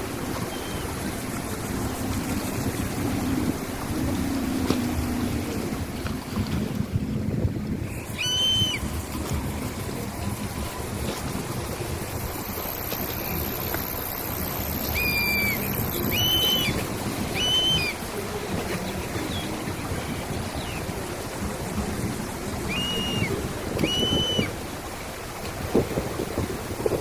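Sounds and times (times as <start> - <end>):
rushing background noise: 0.0 - 27.0
bird whistled call: 0.5 - 0.9, 7.9 - 8.9, 14.6 - 18.0, 22.7 - 24.5
high steady tone: 7.9 - 18.3.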